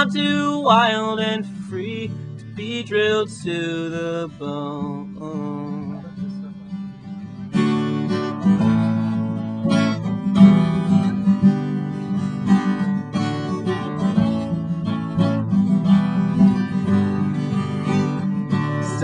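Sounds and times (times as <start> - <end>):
person singing: 0.0 - 6.7, 18.7 - 19.0
acoustic guitar strumming: 0.0 - 19.0.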